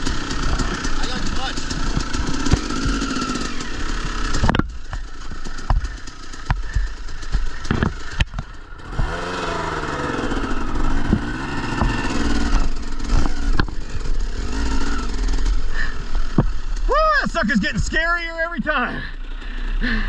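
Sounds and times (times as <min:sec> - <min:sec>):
sharp knocks and clatter: 0:00.0 - 0:03.5, 0:04.2 - 0:09.2, 0:11.0 - 0:12.3, 0:13.0 - 0:13.8
motorcycle engine revving: 0:00.0 - 0:20.0.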